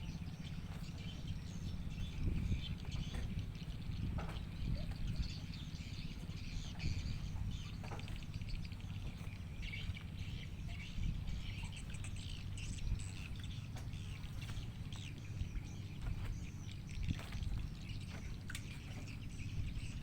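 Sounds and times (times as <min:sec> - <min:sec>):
birds chirping: 0:00.0 - 0:20.0
low rumble: 0:00.0 - 0:20.0.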